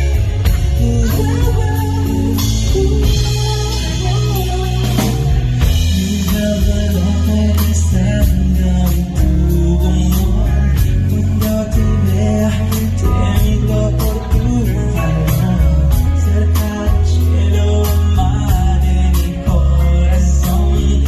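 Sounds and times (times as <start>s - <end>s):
lead singer singing: 0.0s - 21.0s
live band playing: 0.0s - 21.0s.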